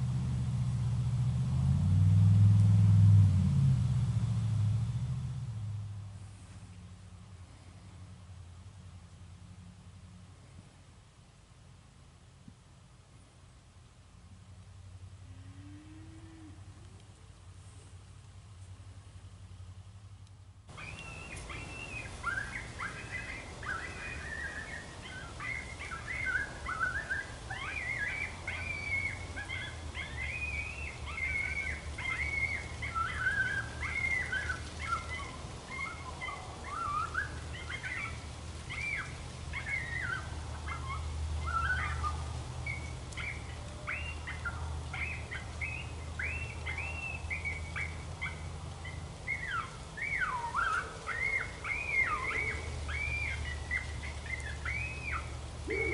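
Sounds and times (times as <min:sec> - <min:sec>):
electronic predator call yips: 0:20.8 - 0:55.9.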